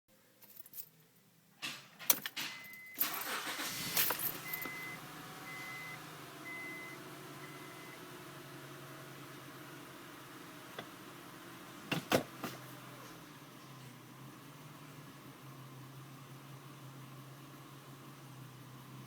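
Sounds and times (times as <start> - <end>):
car engine cranking and idling: 2.4 - 19.0
dashboard warning chime beeping: 2.6 - 3.6, 4.2 - 8.0.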